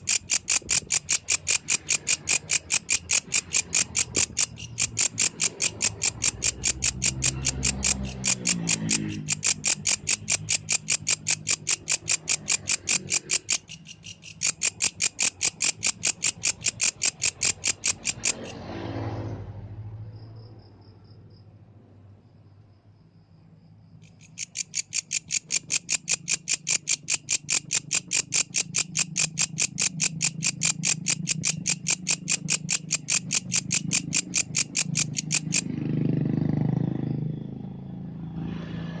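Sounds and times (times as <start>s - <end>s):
grasshopper stridulating: 0.0s - 18.8s, 23.9s - 36.3s.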